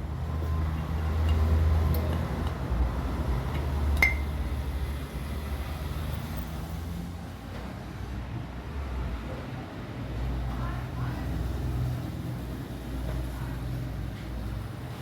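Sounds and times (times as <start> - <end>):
metallic clink: 4.0 - 4.3.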